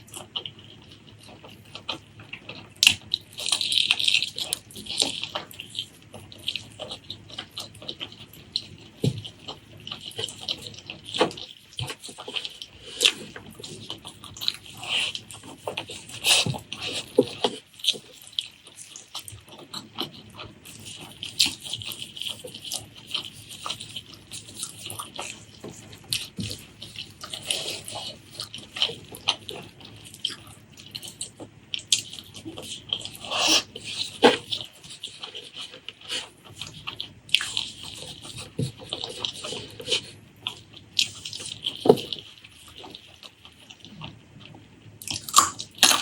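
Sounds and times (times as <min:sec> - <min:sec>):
wet chewing: 0:00.0 - 0:46.0.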